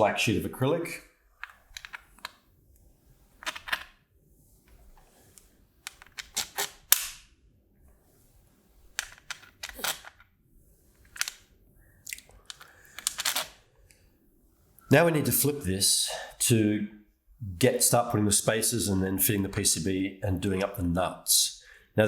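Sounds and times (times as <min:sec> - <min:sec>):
metal screws clicking on plastic plate: 0:01.4 - 0:02.4, 0:05.9 - 0:07.1, 0:12.4 - 0:13.5.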